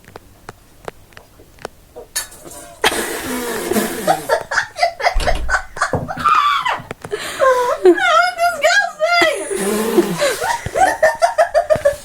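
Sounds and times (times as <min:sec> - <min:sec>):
person laughing: 0:02.8 - 0:12.0.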